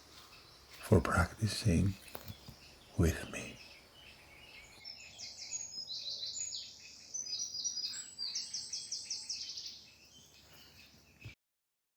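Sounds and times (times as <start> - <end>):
faint background hiss: 0.0 - 9.3
songbird singing: 0.0 - 11.4.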